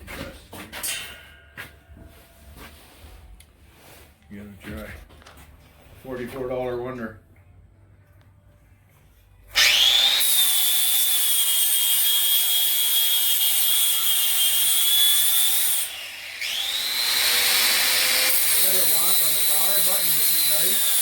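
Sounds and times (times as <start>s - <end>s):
angle grinder grinding: 9.5s - 21.0s.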